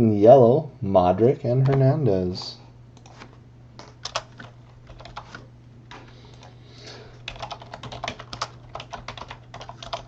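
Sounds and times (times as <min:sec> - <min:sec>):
computer keyboard typing: 0:03.8 - 0:06.5, 0:07.2 - 0:10.0.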